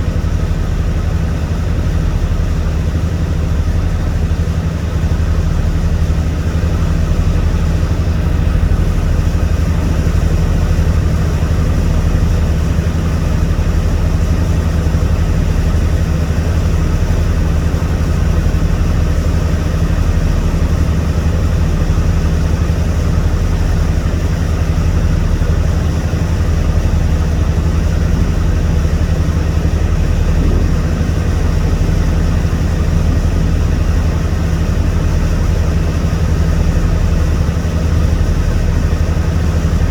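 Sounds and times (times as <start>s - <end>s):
boat engine hum: 0.0s - 39.9s
constant wash of noise: 22.6s - 39.9s.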